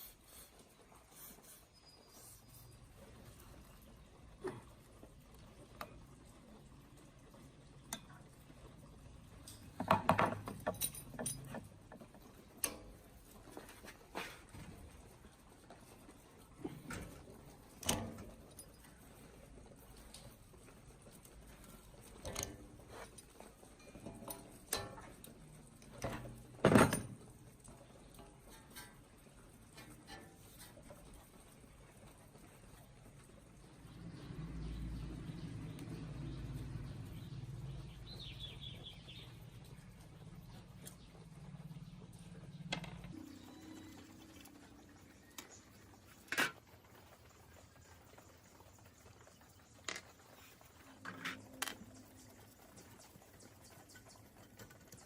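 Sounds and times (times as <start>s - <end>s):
tools clicking and knocking: 9.5s - 12.8s
metal parts clinking: 10.6s - 11.6s
faint low hum: 29.7s - 54.7s.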